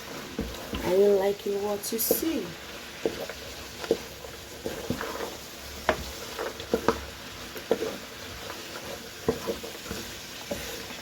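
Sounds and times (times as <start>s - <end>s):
vegetables sizzling in a pan: 0.0s - 11.0s
utensil scraping a pan: 2.0s - 11.0s.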